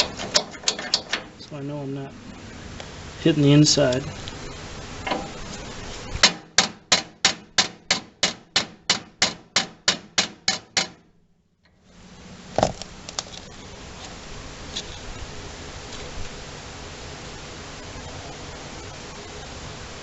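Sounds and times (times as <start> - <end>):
loud metal knock: 0.0 - 1.4, 5.0 - 5.4, 6.2 - 11.1
hammer tapping on metal: 6.2 - 11.0.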